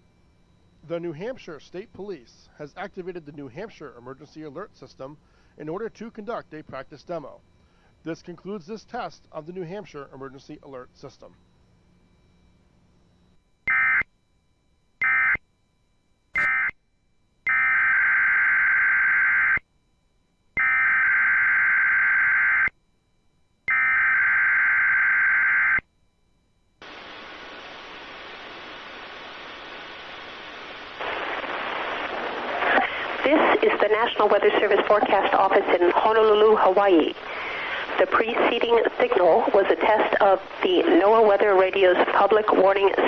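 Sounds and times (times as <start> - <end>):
radio static hiss: 0.8 - 11.4, 26.8 - 43.0.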